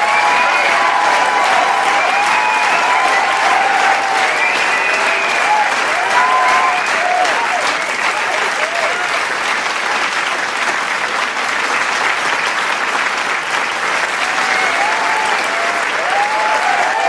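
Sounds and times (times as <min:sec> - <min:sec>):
shouts and whoops: 0:00.0 - 0:09.1, 0:14.2 - 0:17.0
crowd applause and cheering: 0:00.0 - 0:17.0.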